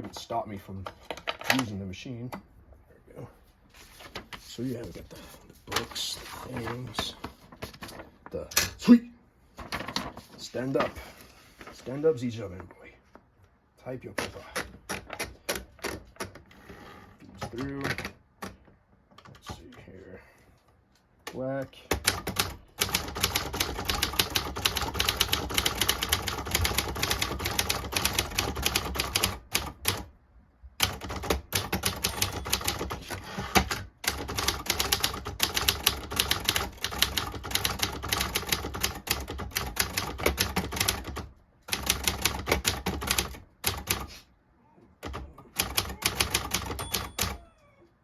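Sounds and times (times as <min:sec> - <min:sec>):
manual typewriter typing: 0:14.1 - 0:16.4, 0:17.2 - 0:18.6, 0:21.9 - 0:30.1, 0:30.8 - 0:44.1, 0:45.0 - 0:47.4.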